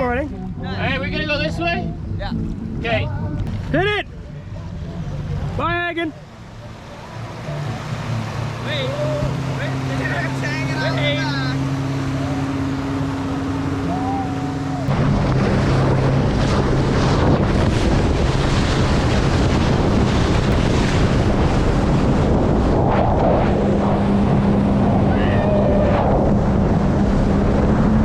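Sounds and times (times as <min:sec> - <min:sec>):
motorboat engine running: 0:00.0 - 0:28.0
water rushing past hull: 0:00.0 - 0:28.0
wind buffeting microphone: 0:09.1 - 0:28.0.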